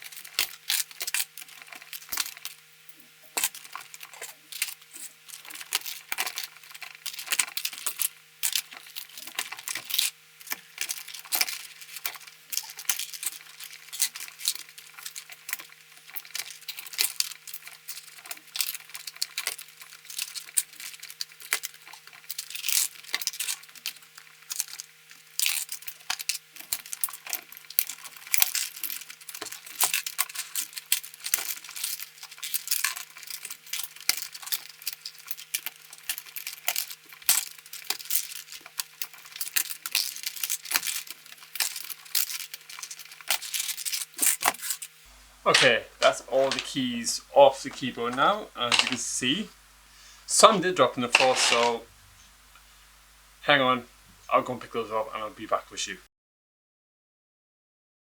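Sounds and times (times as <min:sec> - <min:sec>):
keycaps clicking and clattering: 0:45.5 - 0:49.4, 0:51.0 - 0:51.8.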